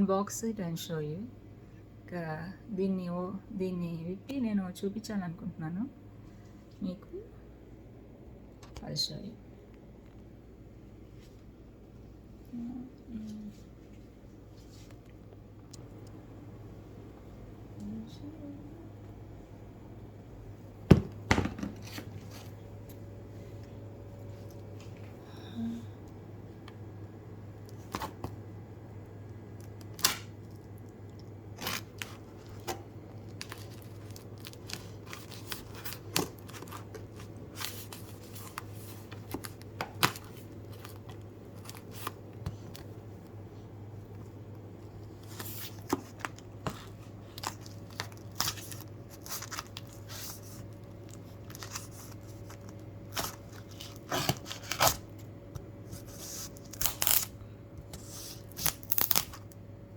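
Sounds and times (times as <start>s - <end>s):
packaging tearing: 31.6s - 38.0s, 47.2s - 50.7s, 51.4s - 55.1s, 56.1s - 57.4s, 58.0s - 59.6s.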